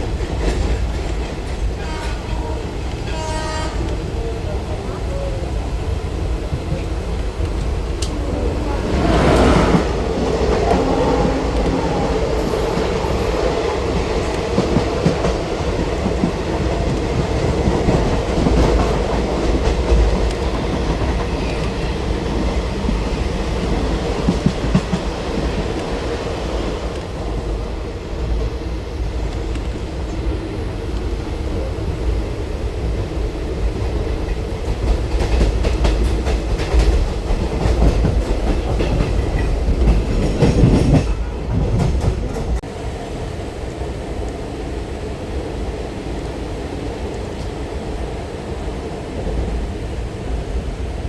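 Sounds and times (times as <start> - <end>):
train rumbling on track: 0.0 - 51.0
rush of noise: 3.8 - 35.2.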